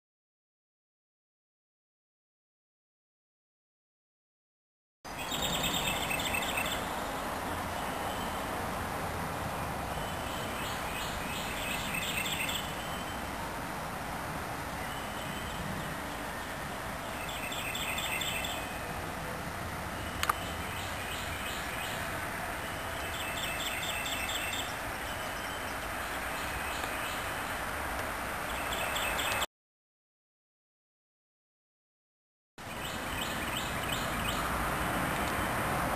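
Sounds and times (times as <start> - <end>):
bird trilling: 10.0 - 13.2, 17.2 - 18.9, 20.0 - 25.8.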